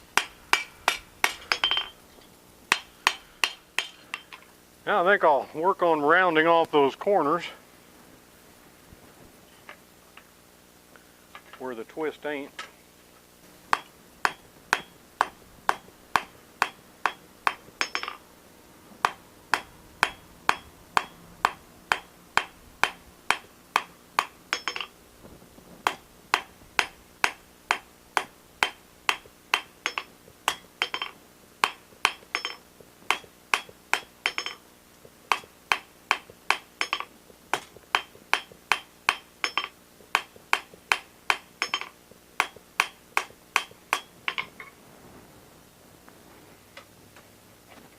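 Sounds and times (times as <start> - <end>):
hammer striking steel on anvil: 0.2 - 2.0, 2.7 - 4.4, 13.7 - 18.2, 19.0 - 25.0, 25.8 - 34.6, 35.3 - 44.7.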